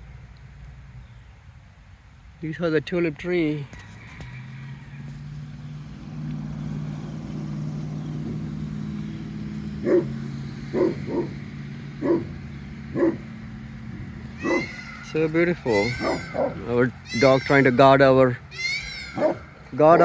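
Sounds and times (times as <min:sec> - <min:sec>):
low engine hum: 0:00.0 - 0:20.0
dog barking: 0:09.8 - 0:11.4, 0:12.0 - 0:13.3, 0:14.4 - 0:15.2, 0:15.8 - 0:16.7, 0:19.1 - 0:19.5.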